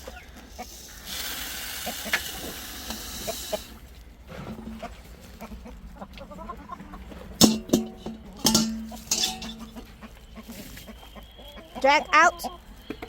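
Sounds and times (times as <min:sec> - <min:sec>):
chickens clucking: 0:00.0 - 0:13.0
rushing hiss: 0:00.5 - 0:03.8.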